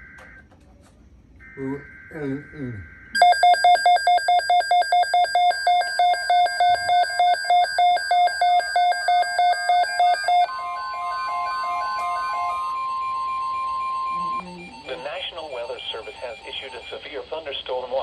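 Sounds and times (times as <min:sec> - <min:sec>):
steady high alarm tone: 0:01.4 - 0:18.0
rapid electronic beeping: 0:01.5 - 0:18.0.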